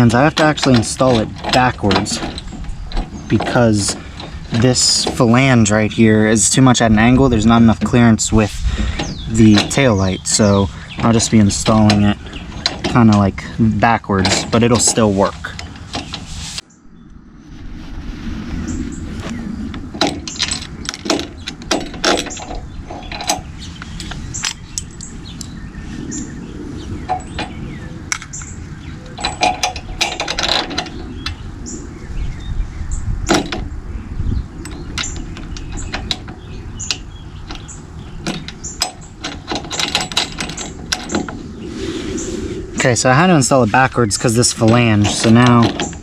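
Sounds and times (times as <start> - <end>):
steady low rumble: 0.0 - 46.0
metallic clicks of hardware: 34.6 - 41.4.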